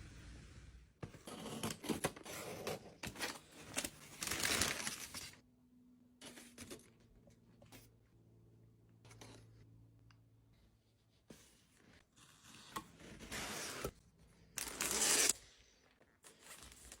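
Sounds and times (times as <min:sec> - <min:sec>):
packaging rustling and tearing: 0:03.0 - 0:05.4.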